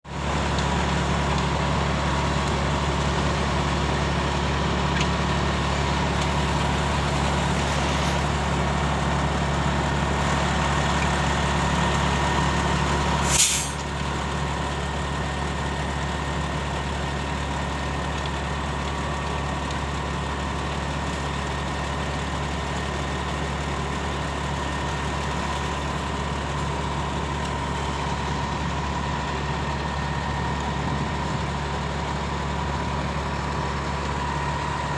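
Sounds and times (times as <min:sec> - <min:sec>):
diesel engine droning: 0:00.1 - 0:34.9
hiss of released air: 0:13.2 - 0:13.9.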